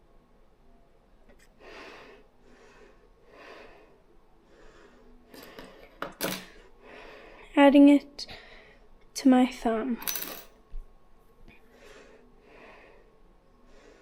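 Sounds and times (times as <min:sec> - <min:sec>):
soft breaths: 0:01.4 - 0:07.6, 0:08.2 - 0:09.0, 0:11.4 - 0:14.0.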